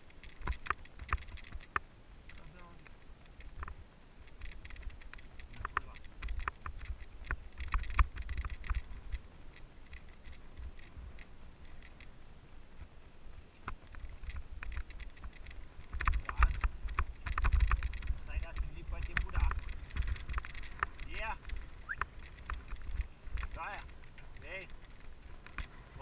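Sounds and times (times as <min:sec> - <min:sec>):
mountain bike clicks and rattles: 0:00.0 - 0:12.2, 0:13.5 - 0:26.0
wind buffeting microphone: 0:13.9 - 0:26.0.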